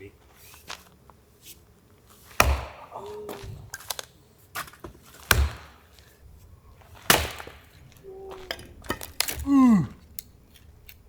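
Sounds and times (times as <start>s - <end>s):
loud sharp thuds: 2.4s - 3.7s, 5.2s - 9.9s.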